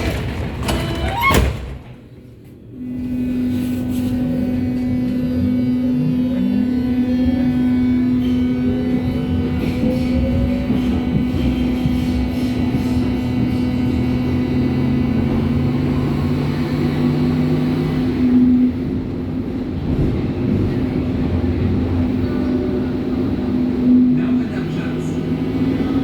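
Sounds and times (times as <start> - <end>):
wheels rumbling on track: 0.0 - 26.0
steady hum: 2.1 - 19.8
electric train motor whining: 2.8 - 19.9.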